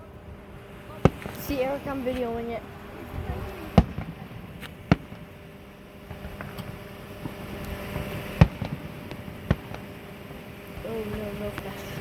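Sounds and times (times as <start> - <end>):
fireworks exploding: 0.0 - 12.0
steady low hum: 0.0 - 12.0.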